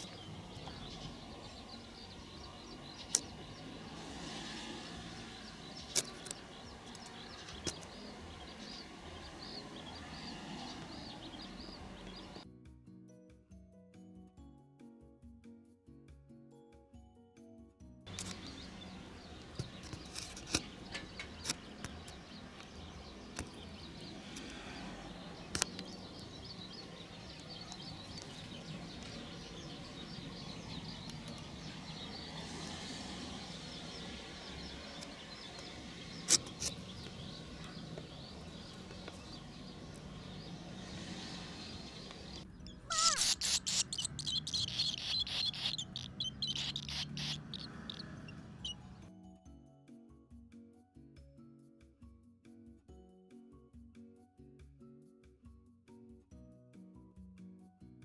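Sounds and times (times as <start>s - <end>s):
swallows chirping and twittering: 0.0s - 12.4s, 18.1s - 49.1s.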